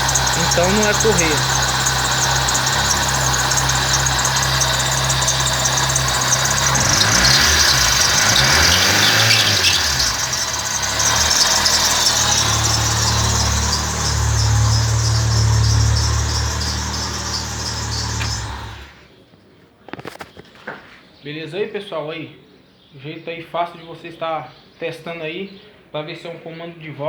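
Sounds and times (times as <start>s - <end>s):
alternator bearing whine: 0.0s - 19.1s
car engine running: 0.0s - 19.1s.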